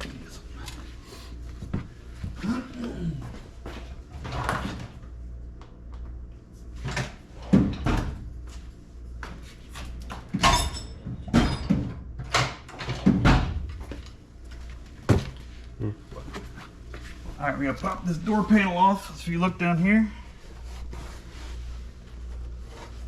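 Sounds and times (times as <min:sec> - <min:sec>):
steady low hum: 0:00.0 - 0:23.0
knocks and clunks of hard parts: 0:10.2 - 0:14.0.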